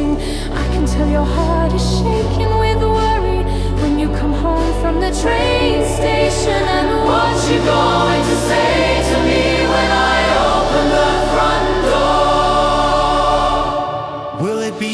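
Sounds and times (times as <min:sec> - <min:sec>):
steady bass: 0:00.0 - 0:14.1
choir-like voices holding notes: 0:05.0 - 0:14.9.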